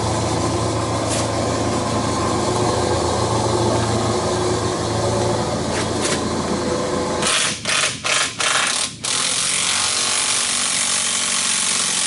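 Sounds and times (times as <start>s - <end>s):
pneumatic wrench running: 7.2s - 12.0s.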